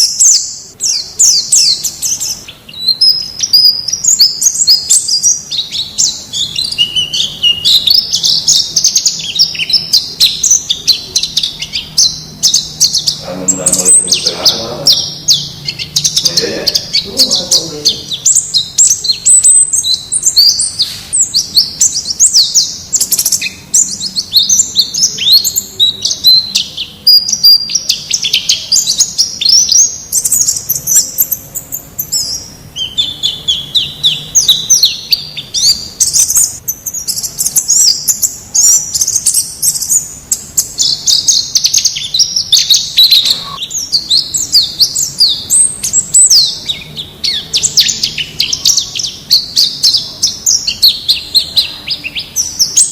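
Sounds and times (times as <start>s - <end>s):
bird chirping and twittering: 0.0s - 52.9s.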